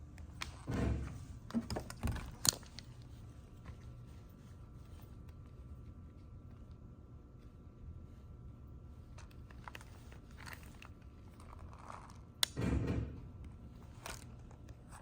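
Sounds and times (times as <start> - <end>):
vending machine humming: 0.0 - 15.0
loud clunk and rattle: 12.6 - 13.3.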